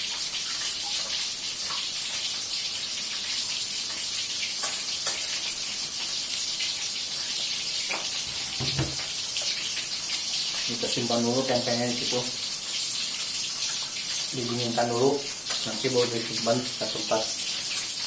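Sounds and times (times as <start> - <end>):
chicken sizzling in hot oil: 0.0 - 18.0.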